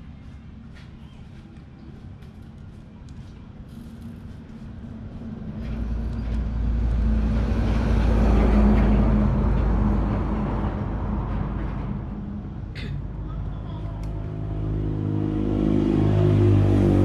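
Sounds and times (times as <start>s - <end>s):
engine running: 3.6s - 17.0s.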